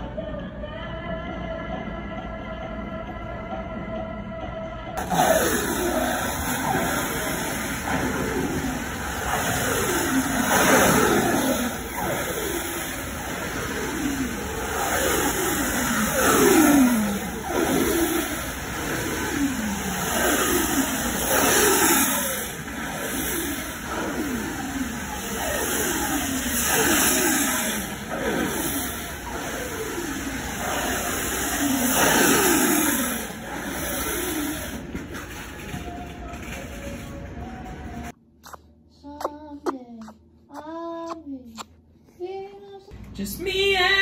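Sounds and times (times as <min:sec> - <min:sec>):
loud noisy roar: 0:05.0 - 0:35.5
motor revving: 0:05.0 - 0:35.7.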